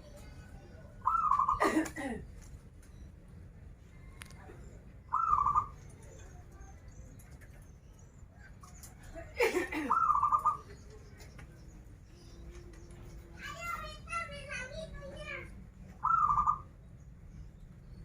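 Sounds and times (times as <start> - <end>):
dove cooing: 0.9 - 1.8, 4.5 - 5.8, 9.8 - 10.7, 16.0 - 16.7.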